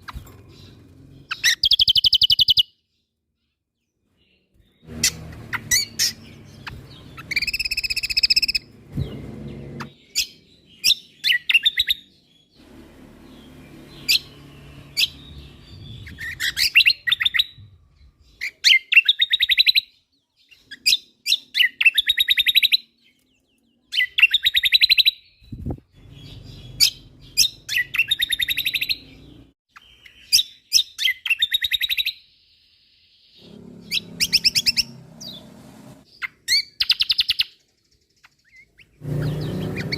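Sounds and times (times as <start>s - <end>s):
songbird trilling: 1.2s - 2.8s, 5.0s - 12.2s, 33.4s - 35.4s.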